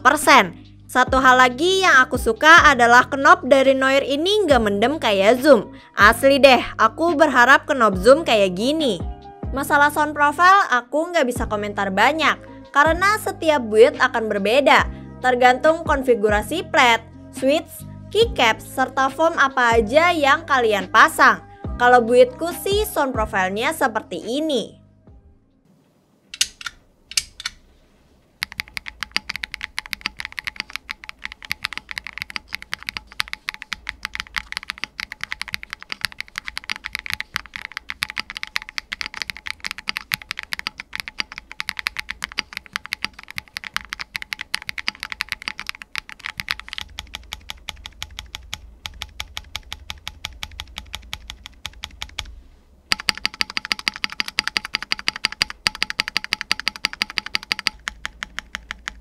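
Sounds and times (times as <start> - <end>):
mechanical keyboard typing: 28.4 - 52.3, 52.9 - 59.0.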